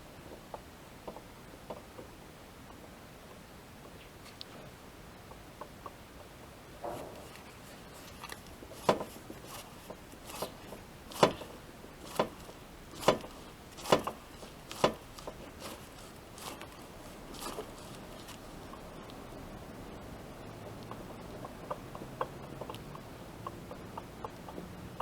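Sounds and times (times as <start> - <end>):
sharp knocks: 6.8 - 7.4, 8.7 - 18.5.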